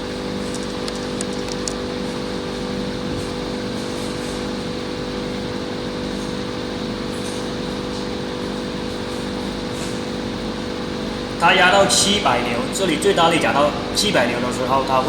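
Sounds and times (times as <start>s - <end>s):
machine motor humming: 0.4s - 1.8s
faint ticks: 0.5s - 1.8s.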